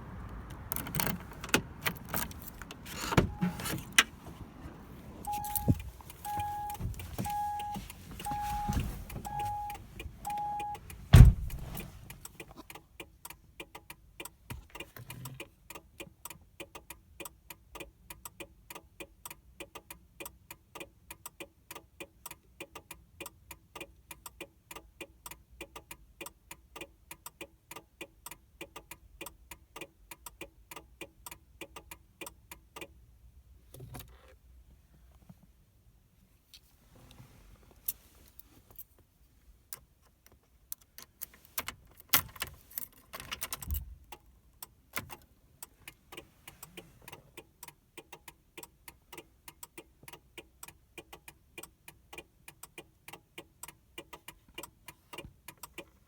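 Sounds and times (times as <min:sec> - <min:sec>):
warning chime beeping: 0:03.2 - 0:03.8, 0:05.2 - 0:10.8
loud thump: 0:11.1 - 0:11.8.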